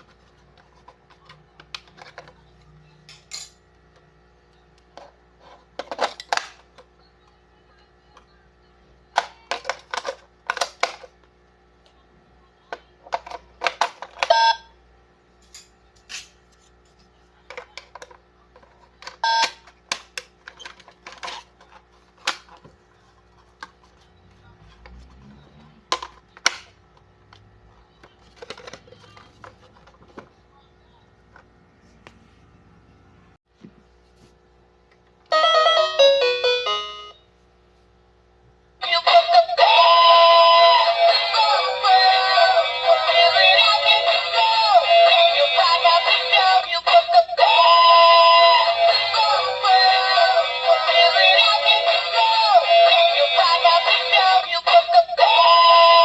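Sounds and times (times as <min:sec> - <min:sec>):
plastic toy clicks and rattles: 0:28.1 - 0:30.2.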